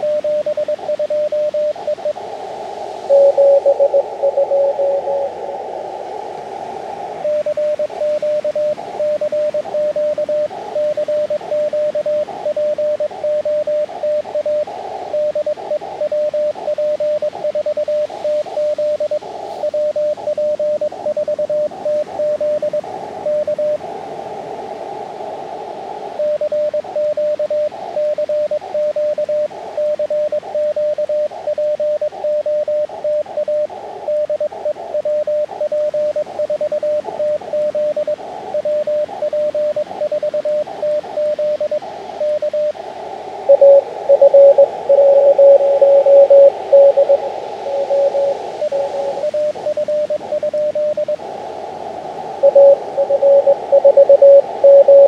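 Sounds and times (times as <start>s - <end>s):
faint distant morse tone: 0.0s - 24.7s, 26.1s - 55.0s
radio receiver hiss: 0.0s - 55.0s
morse code beeps: 3.1s - 5.4s, 43.4s - 51.1s, 52.4s - 55.0s.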